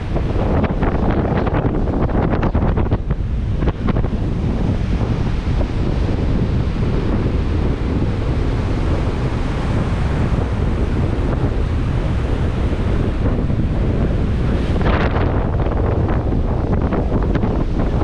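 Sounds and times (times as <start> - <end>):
storm surf crashing: 0.0 - 18.0
wind buffeting microphone: 0.0 - 18.0.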